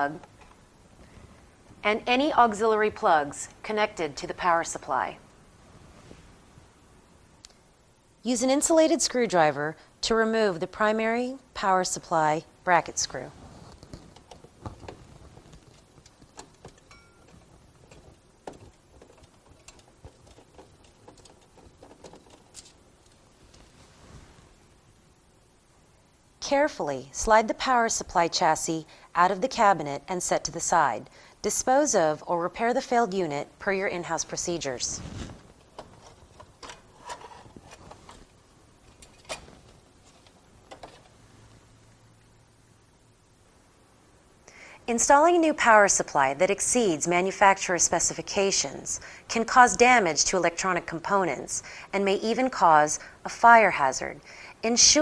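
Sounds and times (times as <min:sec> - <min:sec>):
faint low hum: 0:00.0 - 0:55.0
hardware clicks and knocks: 0:13.6 - 0:23.7, 0:35.6 - 0:41.2.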